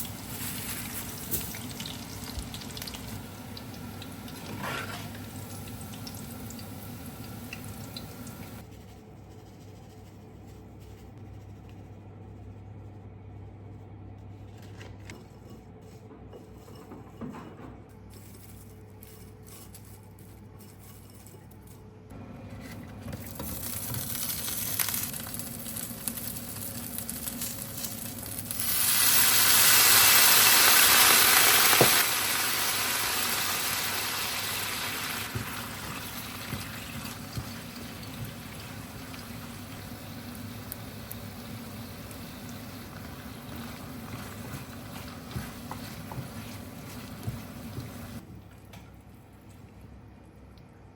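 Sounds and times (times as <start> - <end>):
food sizzling in a frying pan: 23.2 - 48.2.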